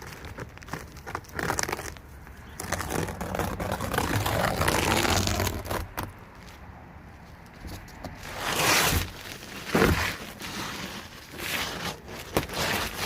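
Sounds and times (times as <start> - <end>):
knife cutting roll roofing: 2.6 - 6.1, 8.2 - 13.0.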